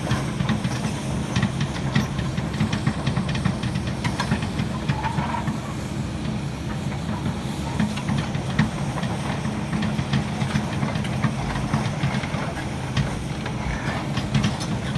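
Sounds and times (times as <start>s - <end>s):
heavy diesel engine running: 0.0s - 14.9s
metallic clanks and knocks: 7.8s - 14.9s.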